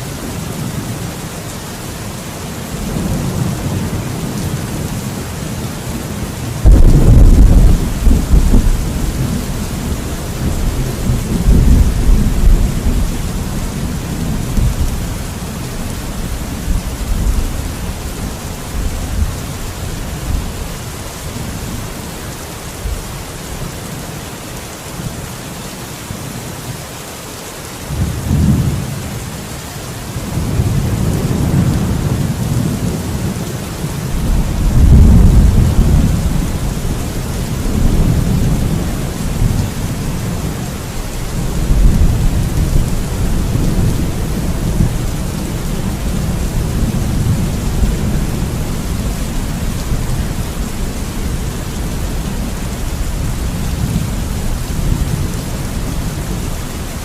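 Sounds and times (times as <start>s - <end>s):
steady rain hissing: 0.0s - 57.0s
rolling thunder: 6.6s - 19.6s, 34.2s - 56.8s.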